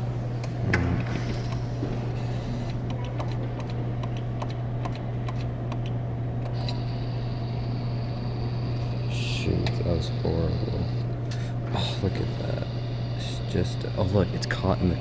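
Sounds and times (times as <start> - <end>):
claw machine hum: 0.0 - 15.0
thin high whine: 6.6 - 15.0.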